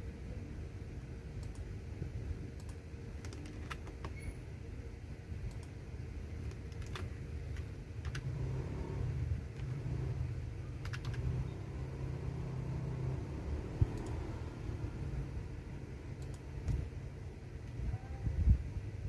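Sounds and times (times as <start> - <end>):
steady low rumble: 0.0 - 19.0
computer keyboard keys clicking: 2.6 - 4.2, 6.4 - 8.3, 10.8 - 11.3.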